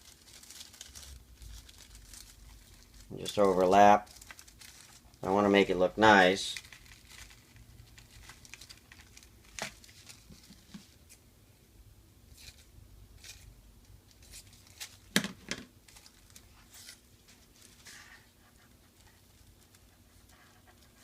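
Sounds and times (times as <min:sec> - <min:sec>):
plastic film crinkling: 0:00.0 - 0:11.2, 0:14.1 - 0:15.2, 0:15.8 - 0:20.8.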